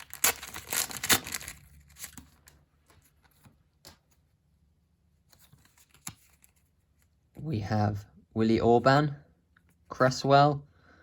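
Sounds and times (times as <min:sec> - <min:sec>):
foil packet tearing and crinkling: 0:00.0 - 0:02.2.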